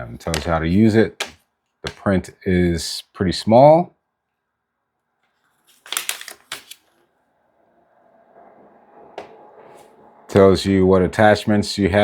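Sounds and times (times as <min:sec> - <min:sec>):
paper rustling: 0:05.3 - 0:07.0
paper booklet crinkling: 0:05.4 - 0:07.0.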